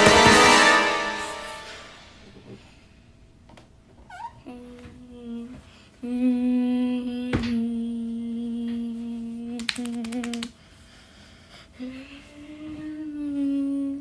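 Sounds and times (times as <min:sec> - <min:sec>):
person humming: 0:04.5 - 0:10.5.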